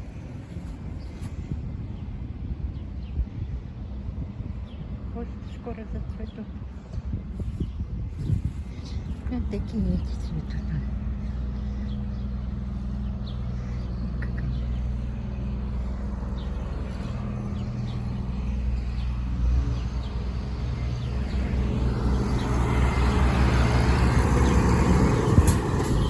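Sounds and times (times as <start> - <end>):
traffic noise: 0.0 - 26.0
vehicle engine running: 7.4 - 26.0.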